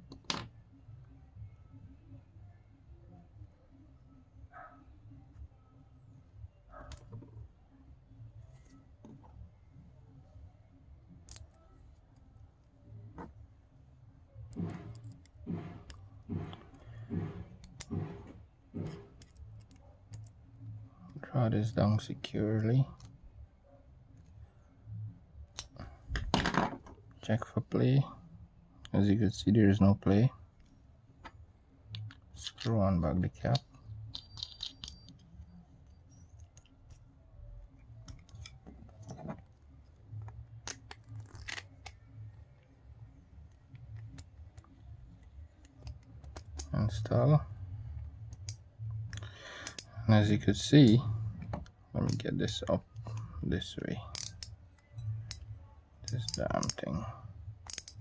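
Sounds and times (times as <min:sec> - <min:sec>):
small clicks and light scrapes: 0:14.5 - 0:20.4, 0:38.0 - 0:42.7, 0:57.6 - 0:58.0
screwdriver turning screw: 0:54.1 - 0:54.5, 0:57.6 - 0:58.0.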